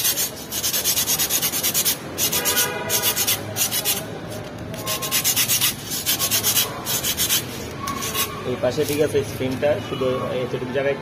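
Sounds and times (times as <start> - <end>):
fast scrubbing strokes on metal: 0.0 - 4.1, 4.7 - 9.1.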